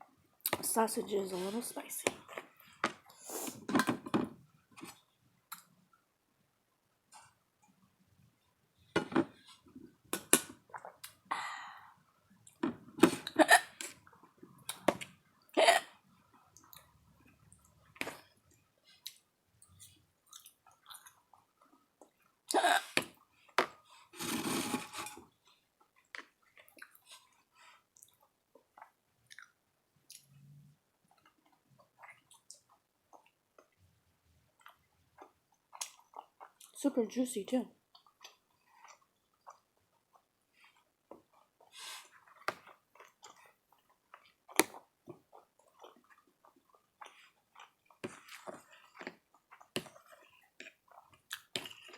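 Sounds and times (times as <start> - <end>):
person chewing: 19.0 - 23.6, 34.6 - 36.8, 37.9 - 51.9.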